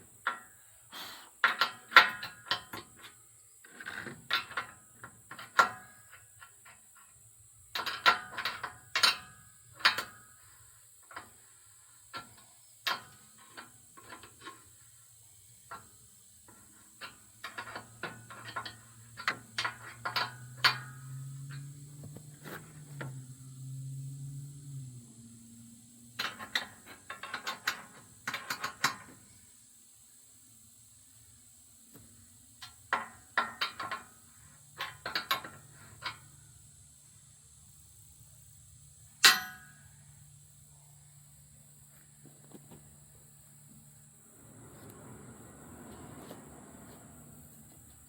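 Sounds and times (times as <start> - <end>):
metal clanks with ringing: 17.0 - 21.8, 39.2 - 40.0.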